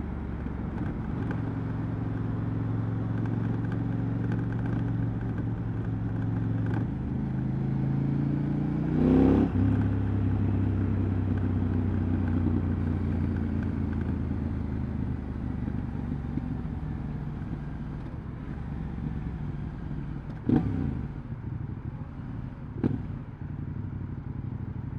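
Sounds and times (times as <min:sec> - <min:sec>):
motorcycle engine revving: 0:18.4 - 0:21.3, 0:22.2 - 0:23.3.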